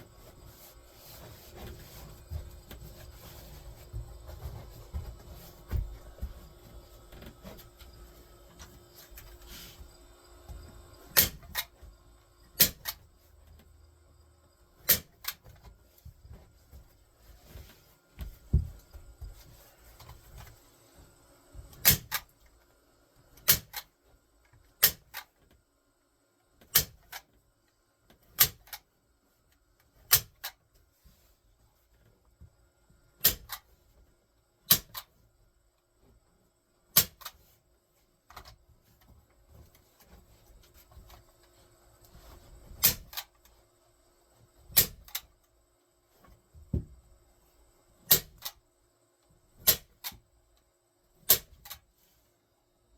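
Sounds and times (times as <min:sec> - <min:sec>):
staple gun firing: 0:11.2 - 0:11.7, 0:21.8 - 0:22.2, 0:23.4 - 0:23.9, 0:42.8 - 0:43.3, 0:44.8 - 0:45.2, 0:48.1 - 0:48.6, 0:49.6 - 0:50.1.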